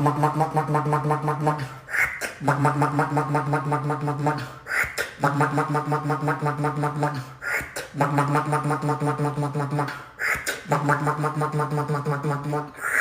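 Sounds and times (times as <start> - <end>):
beatboxing bass buzz: 0.0 - 13.0
beatboxing hissing snare: 0.0 - 13.0.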